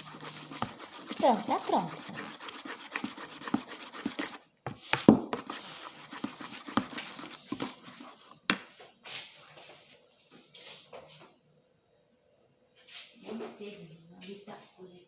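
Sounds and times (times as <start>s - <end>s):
spoon scraping against cup: 0.0s - 4.4s, 5.3s - 8.3s.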